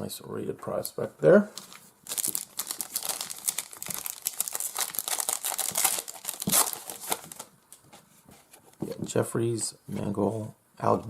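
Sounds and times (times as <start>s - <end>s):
card pack wrapper tearing and crinkling: 1.6s - 7.5s.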